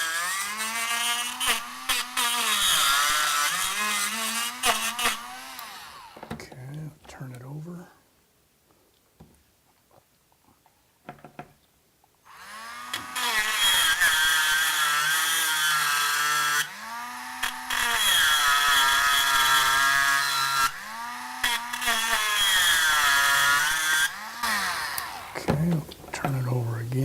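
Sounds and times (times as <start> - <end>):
rotary tool cutting plastic: 0.0 - 6.4, 12.4 - 27.0.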